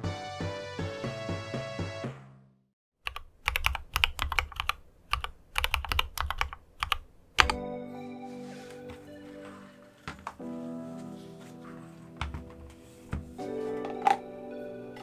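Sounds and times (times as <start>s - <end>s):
music: 0.0s - 2.5s, 7.4s - 15.0s
mechanical keyboard typing: 3.1s - 7.6s.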